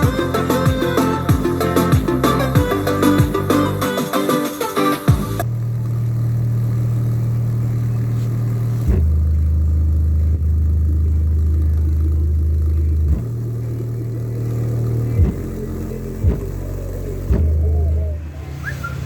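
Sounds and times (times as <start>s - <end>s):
deep bass tones from speaker: 0.0s - 3.8s, 5.2s - 19.0s.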